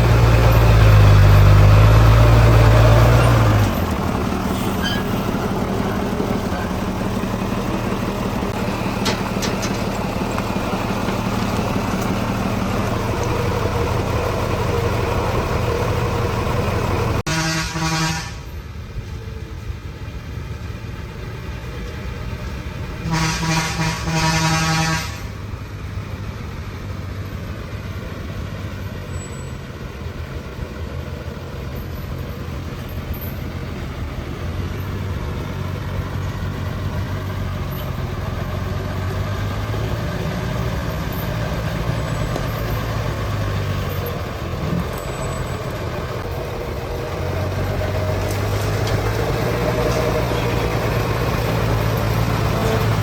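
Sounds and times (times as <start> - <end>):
diesel truck engine running: 0.0 - 53.0
truck horn blasts: 17.3 - 18.5, 23.0 - 25.4.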